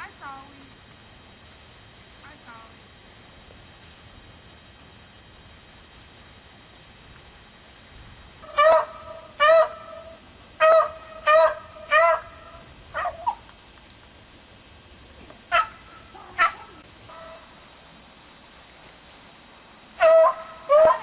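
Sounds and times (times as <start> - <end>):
dog barking: 10.6 - 12.3, 13.0 - 13.4, 15.5 - 17.4, 20.0 - 21.0.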